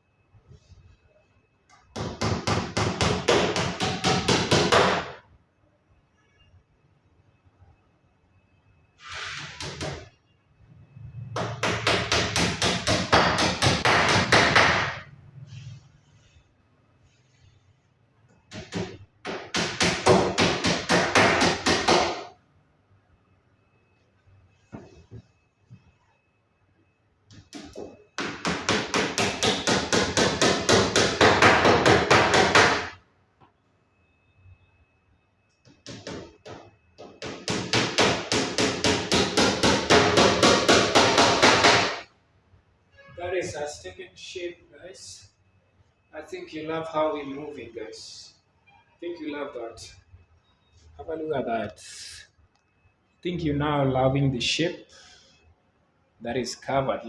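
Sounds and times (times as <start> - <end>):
hammering on wood: 1.9 - 5.2, 11.4 - 15.1, 18.5 - 22.3, 27.3 - 33.0, 35.6 - 42.0.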